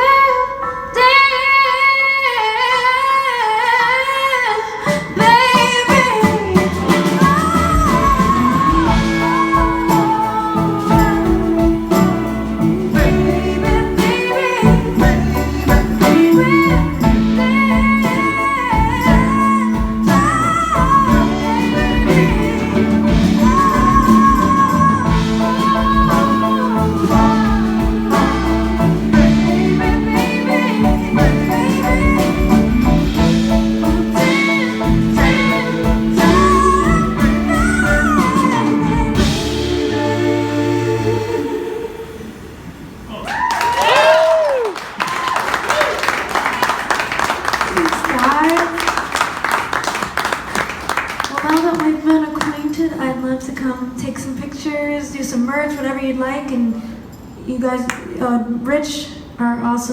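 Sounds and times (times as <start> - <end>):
lead vocal singing: 2.3 - 42.7
live band playing: 4.8 - 43.1.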